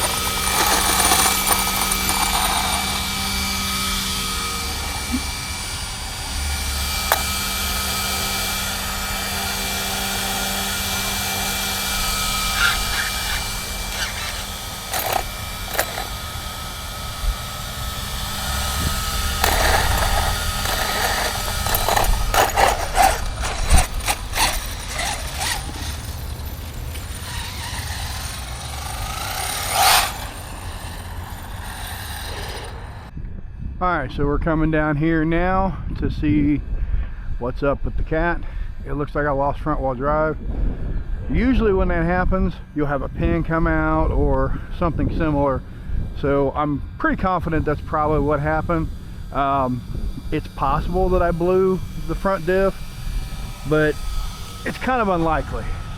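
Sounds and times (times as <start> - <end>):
toy truck knocks and crunches: 0.0 - 5.2, 7.0 - 8.4, 11.0 - 17.6, 18.3 - 32.7
electric motor whining: 0.0 - 33.1, 41.8 - 55.9.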